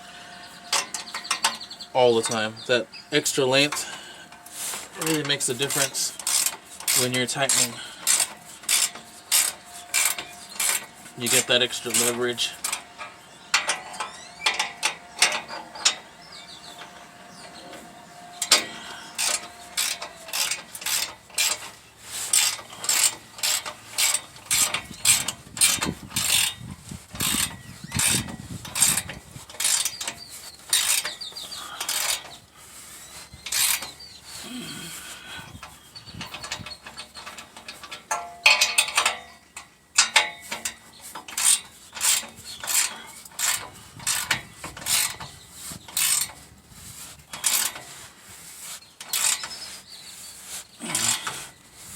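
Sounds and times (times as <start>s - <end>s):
ratchet clicking: 5.0s - 12.8s, 18.4s - 26.6s, 27.2s - 32.4s, 33.4s - 34.0s, 40.0s - 46.4s, 47.3s - 48.0s, 49.0s - 49.6s.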